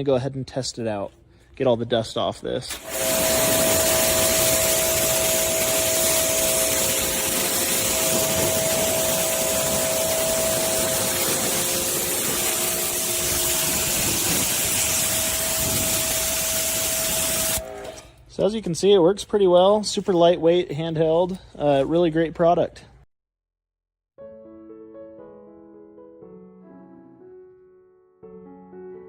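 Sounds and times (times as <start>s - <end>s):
high-pressure water jet hissing: 2.7s - 18.1s
pressure washer pump tone: 2.7s - 18.3s.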